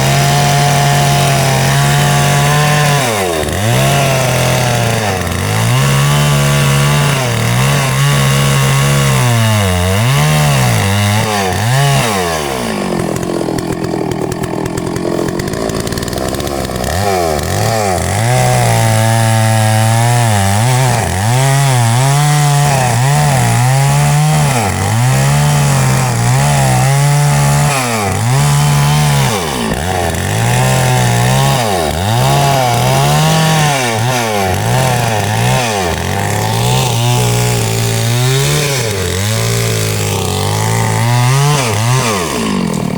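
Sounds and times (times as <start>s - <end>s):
chainsaw cutting tree: 0.0s - 42.9s.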